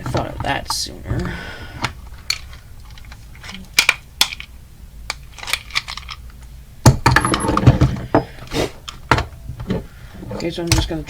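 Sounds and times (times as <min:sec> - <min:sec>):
small plastic and metal pieces clicking: 0:01.8 - 0:06.5.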